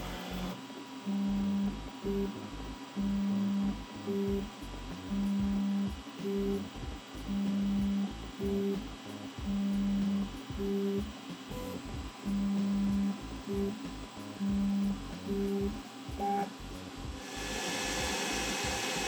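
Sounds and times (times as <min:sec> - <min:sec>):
stepper motors humming: 0:00.0 - 0:19.0.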